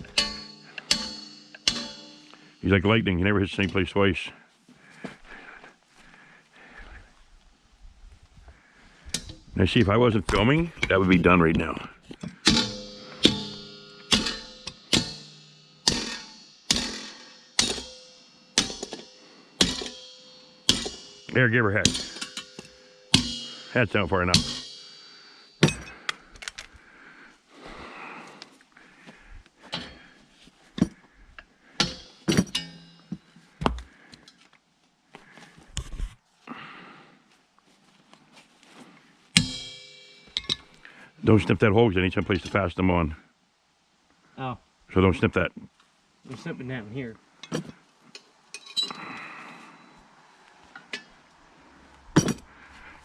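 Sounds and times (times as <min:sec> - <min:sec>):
metal clanks from hand tools: 0:00.0 - 0:02.8, 0:09.1 - 0:09.5, 0:12.0 - 0:26.6, 0:29.6 - 0:30.2, 0:31.8 - 0:33.3, 0:39.4 - 0:40.9, 0:47.4 - 0:49.2, 0:52.2 - 0:53.0
metal scraping: 0:00.0 - 0:04.2, 0:09.1 - 0:26.8, 0:30.8 - 0:33.3.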